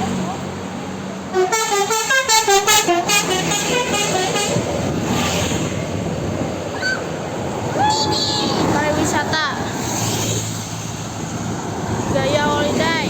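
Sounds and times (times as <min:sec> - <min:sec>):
passing bus and traffic rush: 0:00.0 - 0:13.0
bus musical horn: 0:01.3 - 0:05.9.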